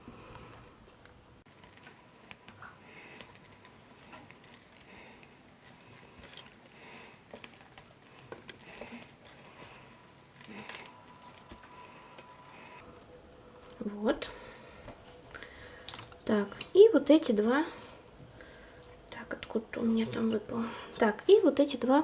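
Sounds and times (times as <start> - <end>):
newspaper tubes rustling: 1.5 - 13.8.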